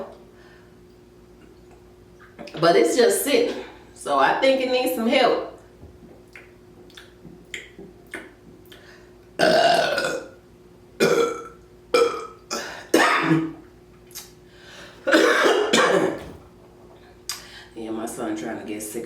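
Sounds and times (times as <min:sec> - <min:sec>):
woman burping loudly: 0:09.4 - 0:10.4, 0:11.0 - 0:13.6.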